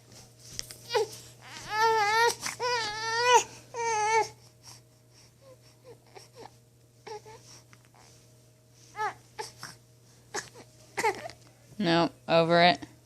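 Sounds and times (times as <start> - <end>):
faint steady hum: 0.0 - 13.0
baby crying: 0.9 - 4.4, 9.0 - 11.4
baby whimpering: 0.9 - 4.4, 9.0 - 11.4.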